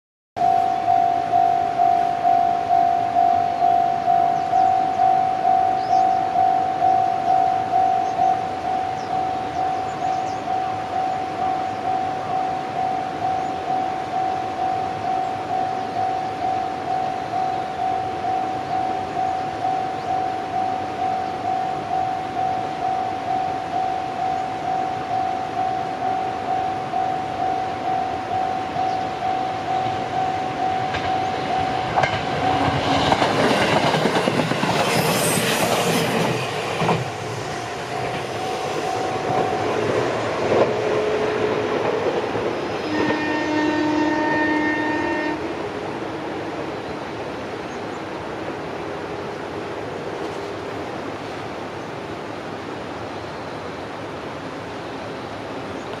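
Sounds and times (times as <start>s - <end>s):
level crossing alarm ringing: 0.4s - 33.9s, 37.6s - 40.6s
train wheels clattering: 29.7s - 43.6s
train horn: 40.5s - 46.6s.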